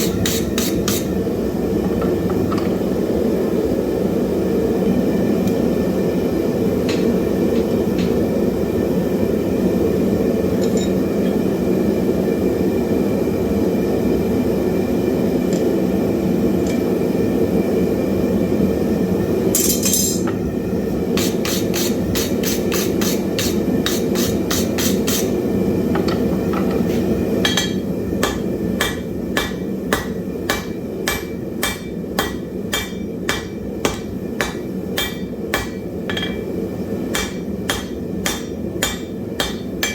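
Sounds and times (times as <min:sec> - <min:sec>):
hammer striking iron on anvil: 0:00.0 - 0:01.2, 0:21.2 - 0:25.4, 0:27.4 - 0:39.9.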